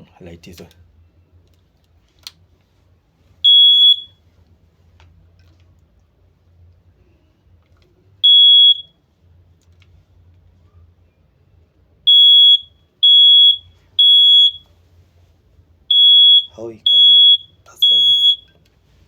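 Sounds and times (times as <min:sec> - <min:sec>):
smoke alarm beeps: 0:03.4 - 0:04.2, 0:08.2 - 0:09.0, 0:12.1 - 0:14.7, 0:15.9 - 0:18.6.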